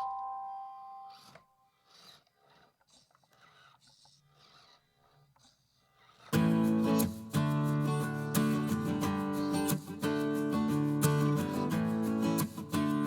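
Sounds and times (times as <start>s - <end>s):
ringing note: 0.0s - 1.3s
strummed guitar music: 6.4s - 13.0s.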